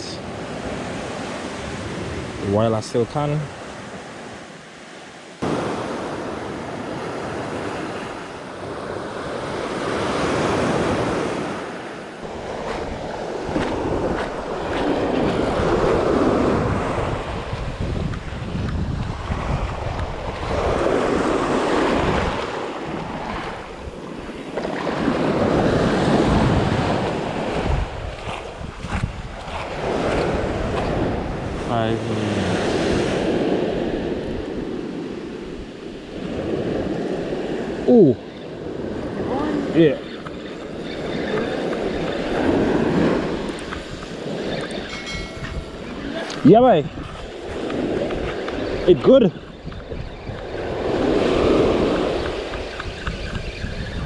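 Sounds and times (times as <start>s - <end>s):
sea waves breaking on beach: 0.0s - 54.0s
wind buffeting microphone: 12.2s - 31.8s, 32.5s - 54.0s.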